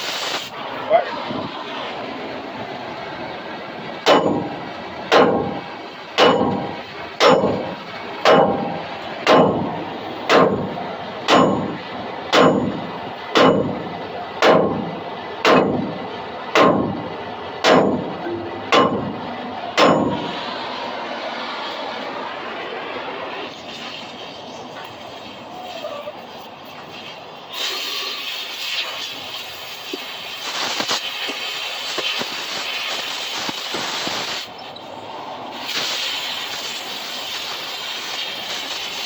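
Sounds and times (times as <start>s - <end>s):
hammer striking steel: 4.0s - 20.4s.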